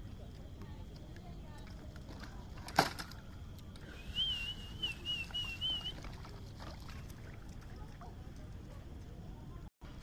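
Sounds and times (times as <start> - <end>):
high wavering whistle: 3.8 - 6.1.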